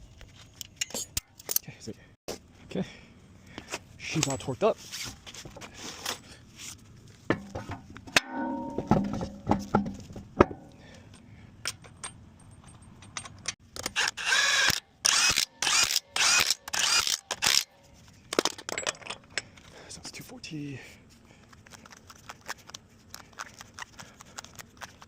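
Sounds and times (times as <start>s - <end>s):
metal tool clanks: 8.2s - 9.6s
impact wrench bursts: 13.9s - 17.7s.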